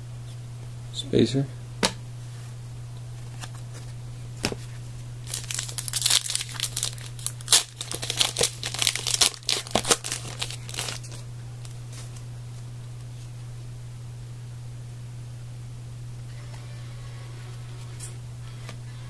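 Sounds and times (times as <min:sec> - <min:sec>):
low electrical hum: 0:00.0 - 0:19.0
foil wrapper tearing and crinkling: 0:05.2 - 0:11.8.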